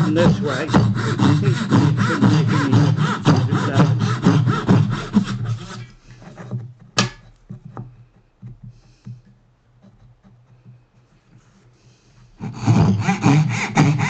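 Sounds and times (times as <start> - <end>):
hand saw cutting wood: 0.0 - 7.2, 12.0 - 14.0.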